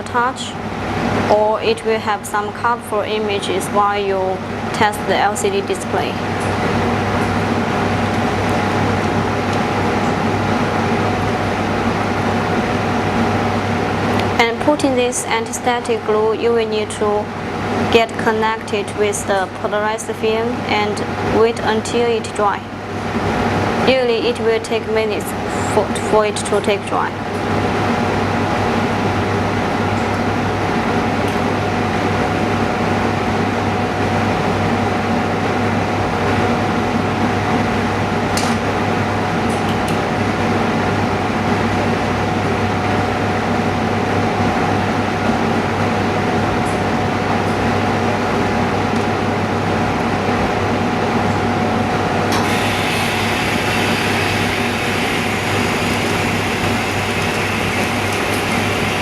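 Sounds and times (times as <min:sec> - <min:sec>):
motor humming: 0:52.0 - 0:59.0
high hiss: 0:52.4 - 0:59.0.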